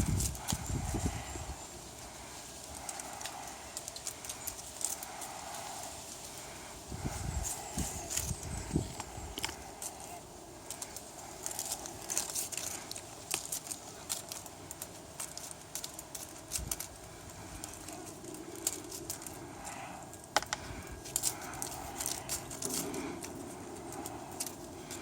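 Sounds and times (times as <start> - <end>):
light rustling and clicks: 7.4 - 25.0.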